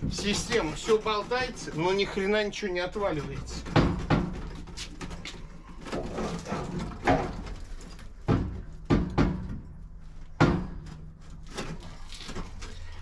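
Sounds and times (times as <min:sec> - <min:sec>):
heavy blows on steel frame: 0:03.5 - 0:04.7, 0:08.1 - 0:11.3.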